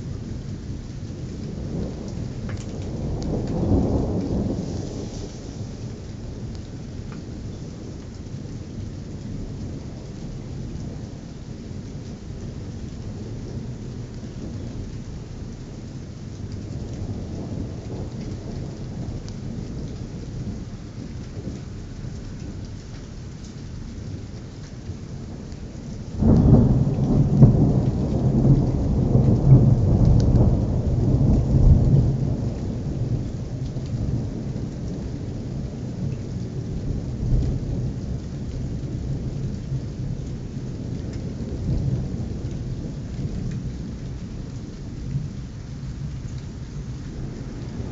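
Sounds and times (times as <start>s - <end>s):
low rumbling thunder: 0.0s - 47.9s
steady rain: 0.0s - 47.9s
loud thunderclap: 1.7s - 6.6s, 26.2s - 35.1s, 46.8s - 47.9s.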